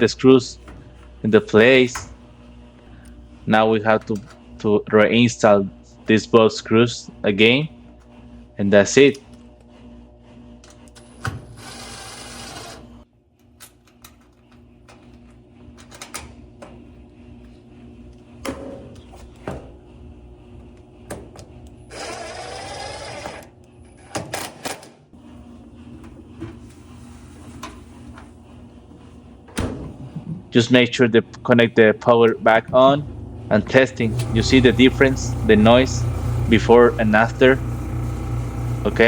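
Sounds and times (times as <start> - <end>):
power drill whirring: 11.5 - 12.9, 21.9 - 23.5, 32.7 - 39.0.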